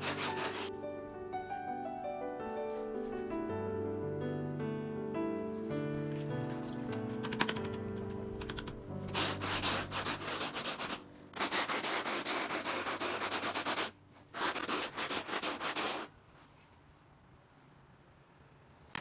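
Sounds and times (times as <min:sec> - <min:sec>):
rasping scrubbing strokes: 0:00.0 - 0:00.7, 0:09.1 - 0:16.1
background music: 0:00.0 - 0:13.8.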